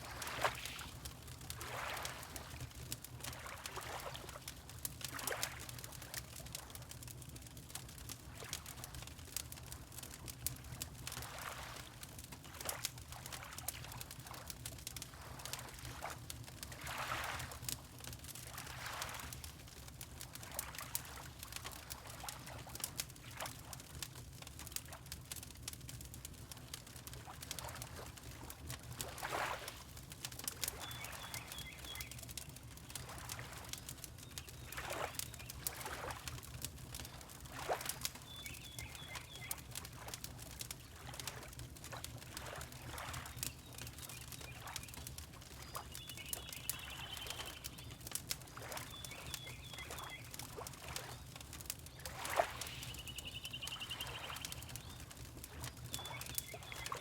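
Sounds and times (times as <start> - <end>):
water lapping: 0.0 - 1.0, 1.6 - 2.7, 11.1 - 14.5, 15.1 - 17.7, 18.4 - 19.7, 27.2 - 30.0, 32.8 - 33.8, 34.4 - 57.0
fire crackling and popping: 0.1 - 57.0
bird chirping trills: 45.9 - 47.8, 52.6 - 55.0.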